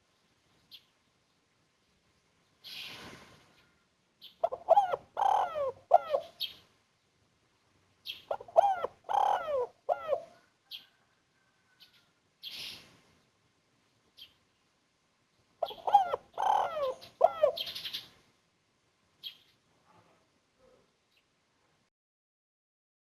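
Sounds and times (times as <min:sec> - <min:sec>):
dove cooing: 0:04.4 - 0:06.5, 0:08.3 - 0:10.5, 0:15.6 - 0:18.0.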